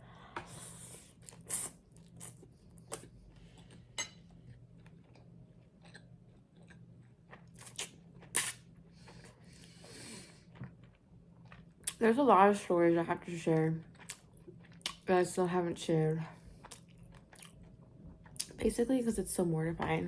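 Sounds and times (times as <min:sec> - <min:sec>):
person chewing: 0:01.0 - 0:12.0, 0:13.9 - 0:15.0, 0:16.5 - 0:18.5.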